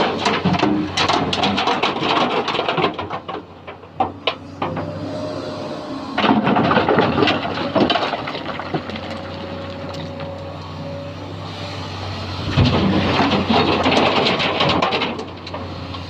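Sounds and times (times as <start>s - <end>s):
rocks clattering into steel truck bed: 0.0s - 4.9s, 6.2s - 10.3s, 12.5s - 15.7s
excavator diesel engine running: 0.0s - 16.0s.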